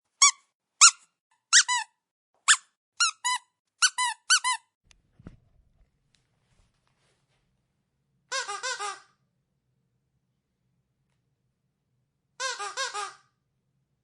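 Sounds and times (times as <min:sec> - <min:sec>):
dog squeaker toy squeaking: 0:00.2 - 0:04.7, 0:08.3 - 0:09.1, 0:12.4 - 0:13.2.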